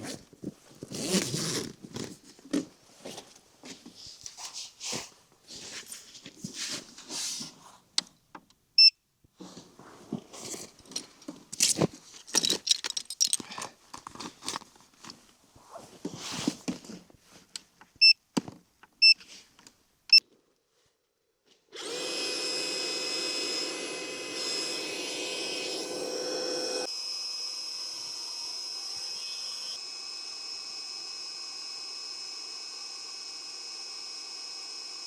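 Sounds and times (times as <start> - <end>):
rustling and clicking of handling: 9.4 - 20.4
electric air pump running: 21.8 - 35.0.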